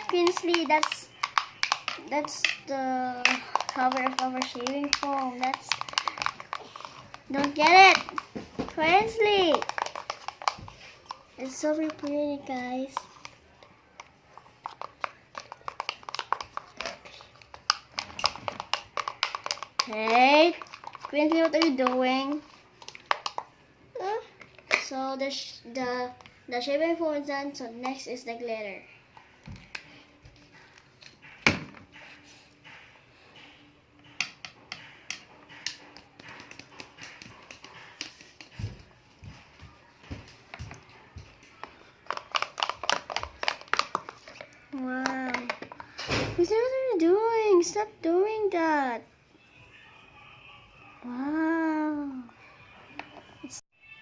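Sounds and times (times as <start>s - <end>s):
plastic container tapping and clicking: 0.0s - 2.6s, 3.2s - 10.7s, 14.6s - 23.5s, 41.6s - 45.9s
slime being stirred squelching: 0.0s - 28.6s, 33.5s - 49.8s.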